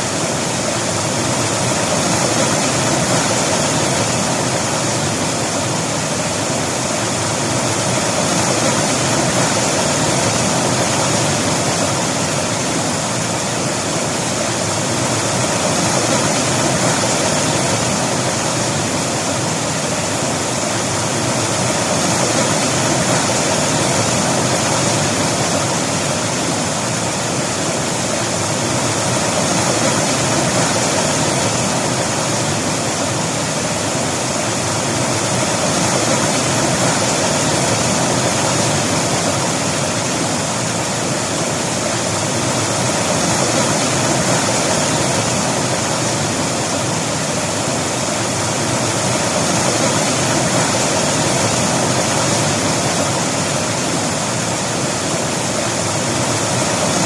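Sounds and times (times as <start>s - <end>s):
river water rushing over rocks: 0.0s - 57.0s.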